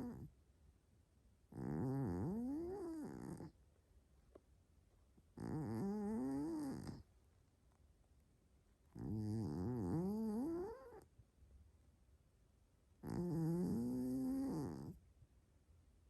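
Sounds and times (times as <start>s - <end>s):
cat snoring: 0.0s - 0.3s, 1.5s - 3.6s, 5.4s - 7.0s, 8.9s - 11.0s, 13.0s - 15.0s.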